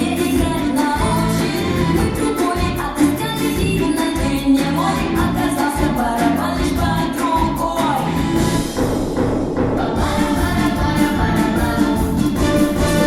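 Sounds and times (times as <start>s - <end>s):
pop dance music over speakers: 0.0s - 13.0s.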